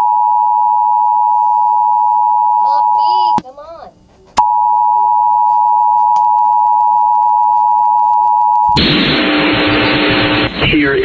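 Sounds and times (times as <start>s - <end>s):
hissy radio audio: 9.4s - 11.0s.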